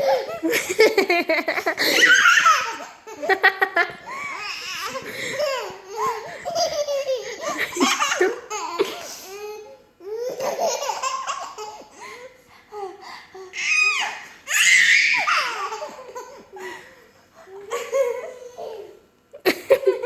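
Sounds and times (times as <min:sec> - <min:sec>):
people laughing hard: 0:00.0 - 0:09.1.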